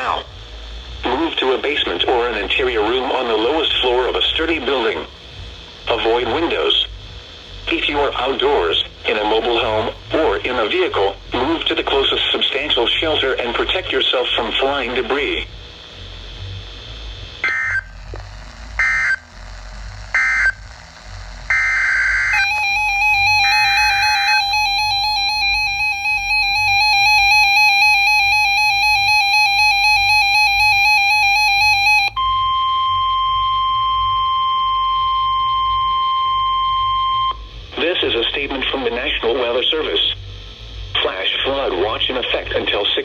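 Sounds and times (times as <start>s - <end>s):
fast warbling electronic alarm: 17.4s - 18.1s, 18.8s - 19.3s, 20.1s - 20.7s, 21.5s - 37.4s
squawking data bursts: 17.4s - 18.2s, 18.8s - 19.3s, 20.1s - 20.6s, 21.5s - 32.1s
steady warning alarm tone: 17.4s - 20.8s, 21.4s - 37.6s.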